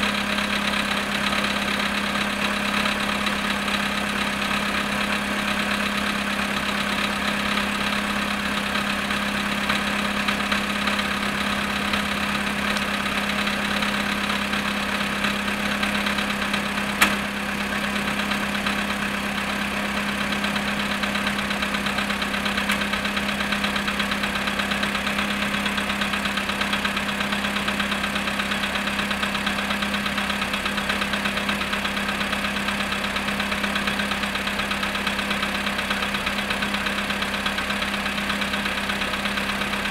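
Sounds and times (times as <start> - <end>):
car engine idling with a knock: 9.5 - 19.3, 20.4 - 32.5.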